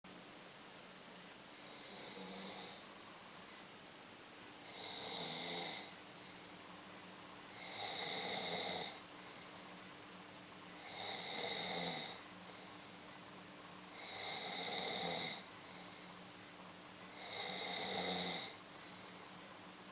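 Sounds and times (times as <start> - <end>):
man snoring with hissing snores: 1.6 - 2.9, 4.6 - 6.0, 7.5 - 9.0, 10.8 - 12.2, 13.9 - 15.5, 17.1 - 18.6.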